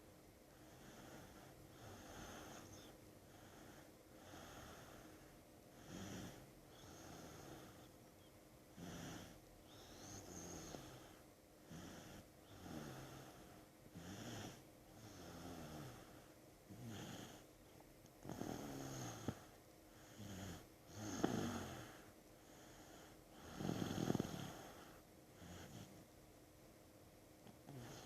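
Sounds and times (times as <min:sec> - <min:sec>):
child snoring with rattling breaths: 0:00.5 - 0:08.0, 0:08.7 - 0:26.0, 0:27.4 - 0:28.0.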